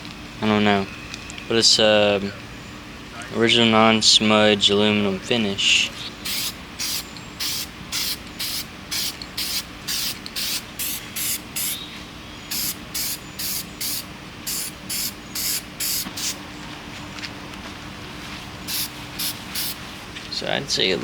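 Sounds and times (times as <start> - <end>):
spray paint can bursts: 6.2 - 11.8, 12.5 - 16.4, 18.7 - 19.8.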